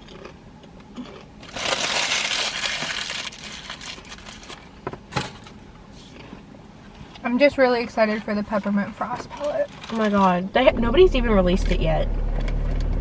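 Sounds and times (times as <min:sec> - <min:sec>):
food wrapper crinkling: 0:01.0 - 0:04.7, 0:09.2 - 0:10.5.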